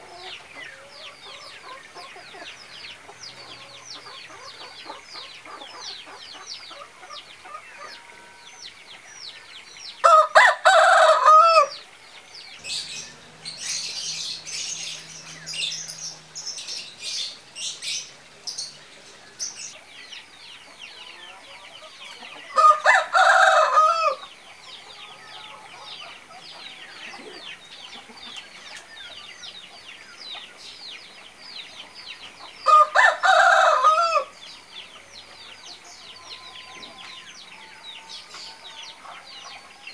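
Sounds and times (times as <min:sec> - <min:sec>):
rooster crowing: 0:10.0 - 0:11.8, 0:21.0 - 0:24.3, 0:32.7 - 0:34.4.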